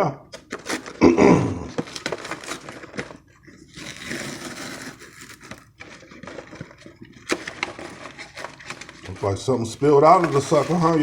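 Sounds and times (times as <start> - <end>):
plastic and cardboard packaging crinkling: 0.4 - 11.0.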